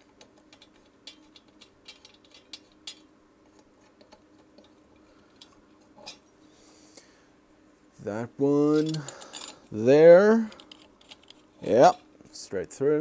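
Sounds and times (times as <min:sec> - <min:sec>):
small metal parts clicking: 0:00.0 - 0:03.1, 0:08.8 - 0:11.5.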